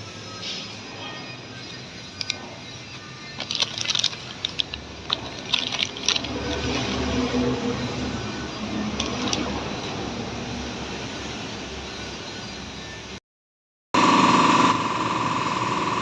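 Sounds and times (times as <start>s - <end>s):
metallic clicks and clinks: 1.6s - 7.1s.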